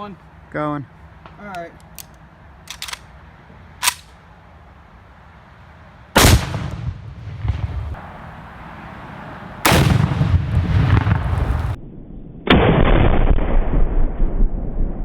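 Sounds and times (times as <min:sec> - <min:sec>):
rolling echo rumble: 0:05.0 - 0:11.8
explosive target blasts: 0:06.2 - 0:08.0, 0:09.6 - 0:15.0.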